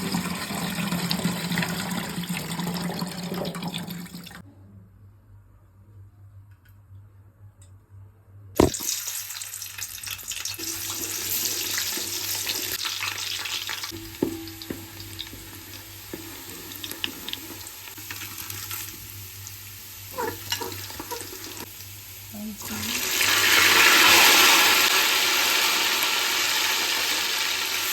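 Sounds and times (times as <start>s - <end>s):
pot knock: 8.6s - 8.8s, 13.9s - 16.8s
food sizzling in hot oil: 8.6s - 27.9s.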